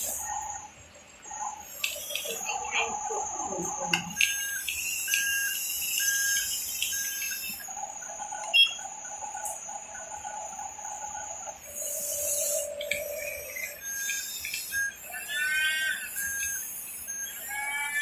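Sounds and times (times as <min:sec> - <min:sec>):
night insects chirring: 0:00.0 - 0:18.0.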